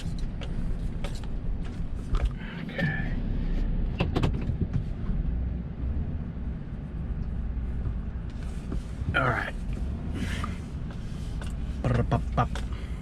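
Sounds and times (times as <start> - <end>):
vehicle engine rumbling: 0.0 - 13.0.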